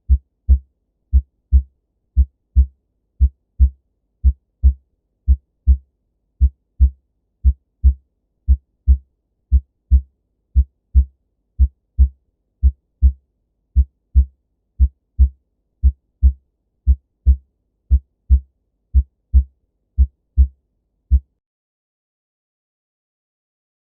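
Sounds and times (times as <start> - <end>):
heartbeat: 0.0 - 5.8, 6.4 - 13.2, 13.8 - 21.3.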